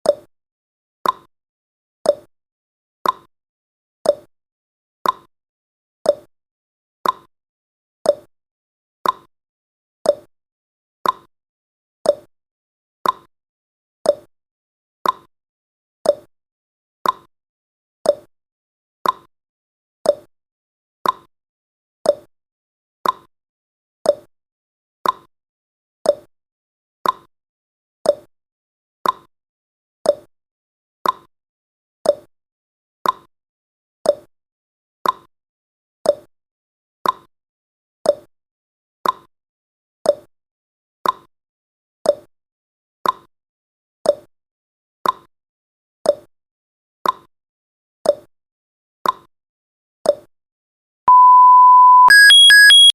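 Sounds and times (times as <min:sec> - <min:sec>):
countdown timer ticking: 0:51.1 - 0:52.9
steady electronic beep tone: 0:51.1 - 0:52.9.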